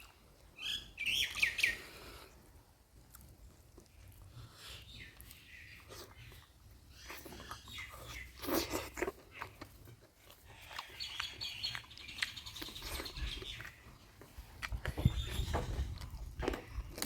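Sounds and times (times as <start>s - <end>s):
wet chewing: 0.0s - 17.0s
lip smacks: 5.1s - 17.0s.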